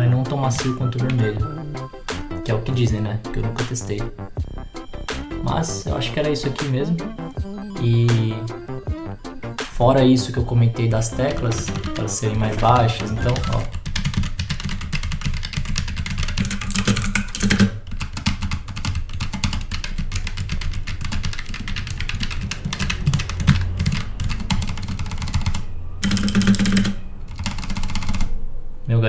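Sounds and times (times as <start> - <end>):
fast typing on mechanical keyboard: 0.2 - 2.8, 9.7 - 28.3.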